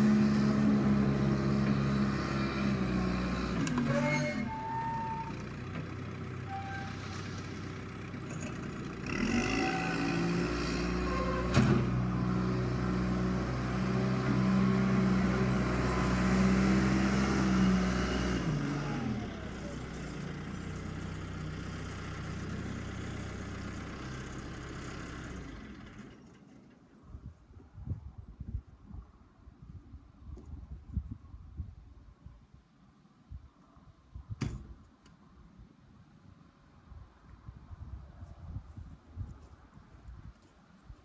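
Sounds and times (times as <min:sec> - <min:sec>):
diesel engine revving: 0:00.0 - 0:26.2.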